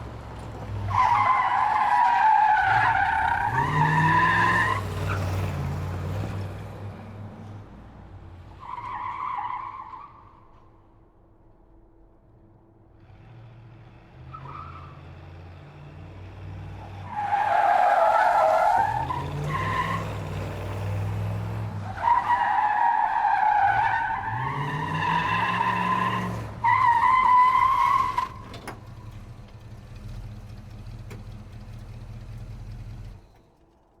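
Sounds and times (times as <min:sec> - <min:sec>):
car engine idling: 0:28.3 - 0:33.9.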